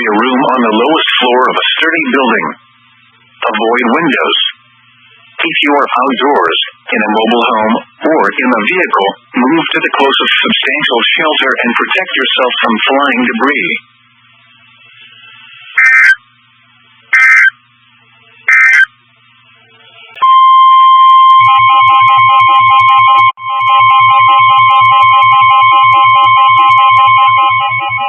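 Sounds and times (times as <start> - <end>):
electronic data tones: 15.8 - 16.2, 17.2 - 17.6, 18.5 - 18.9
loud steady alert tone: 15.8 - 16.2, 17.2 - 17.6, 18.5 - 18.9.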